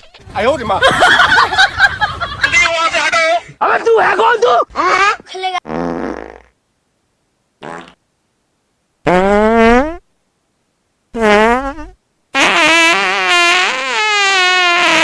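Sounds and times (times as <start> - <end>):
fake fart sounds: 4.8 - 6.6, 7.6 - 8.0, 9.0 - 10.1, 11.1 - 15.0.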